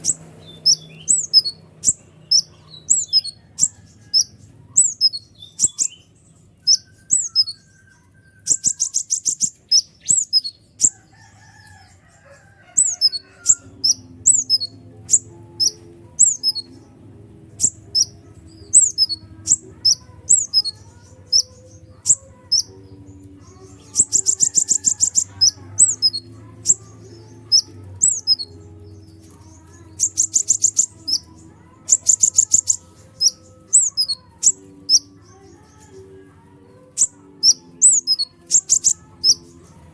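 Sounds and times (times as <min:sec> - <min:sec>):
high downward-sweeping bird chirps: 0:00.0 - 0:11.0, 0:12.8 - 0:16.9, 0:17.6 - 0:22.7
faint low hum: 0:00.0 - 0:39.9
rapid buzzy bird trills: 0:00.0 - 0:39.9.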